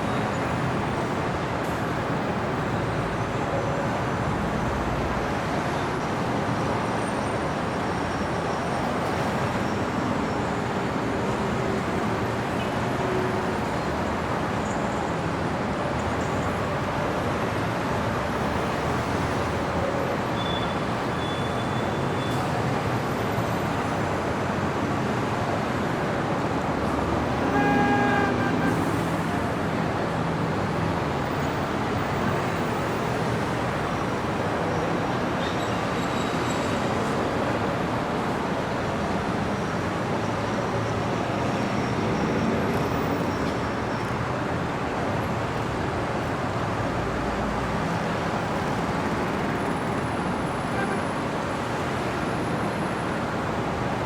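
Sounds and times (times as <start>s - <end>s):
city street traffic: 0.0s - 54.0s
vehicle horn: 27.2s - 29.3s.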